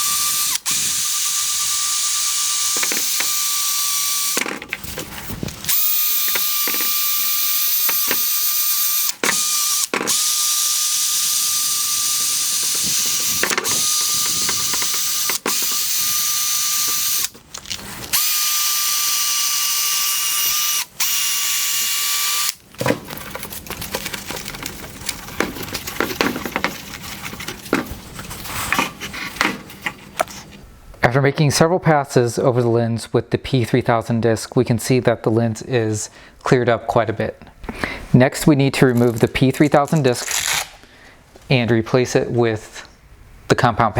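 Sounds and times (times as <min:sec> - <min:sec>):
power drill sanding whine: 0:00.0 - 0:04.5, 0:05.7 - 0:17.3
handling clicks and rattles: 0:22.6 - 0:30.4.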